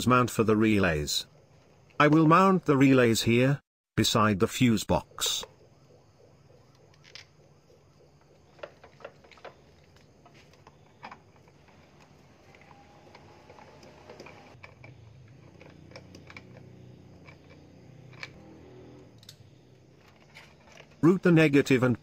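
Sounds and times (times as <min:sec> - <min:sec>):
clicks of small parts and tools: 0:08.6 - 0:18.4, 0:19.1 - 0:21.1.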